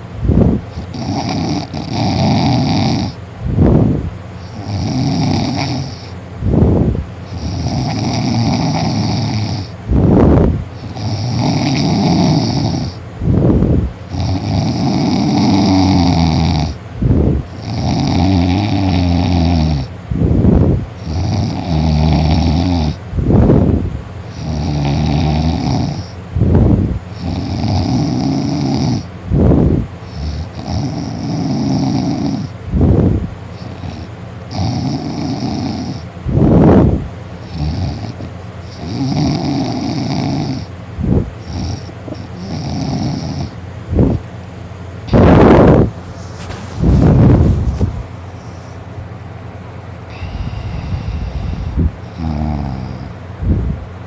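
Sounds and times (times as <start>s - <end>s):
man snoring loudly: 0.8s - 3.2s, 4.4s - 6.1s, 7.2s - 10.2s, 10.8s - 13.0s, 14.1s - 19.9s, 21.0s - 23.0s, 24.3s - 33.0s, 33.6s - 43.6s, 45.1s - 45.9s, 50.1s - 53.2s.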